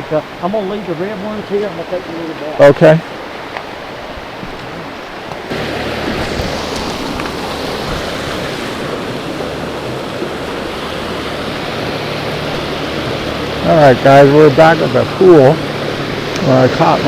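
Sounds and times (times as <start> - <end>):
creek water flowing: 0.0 - 17.0.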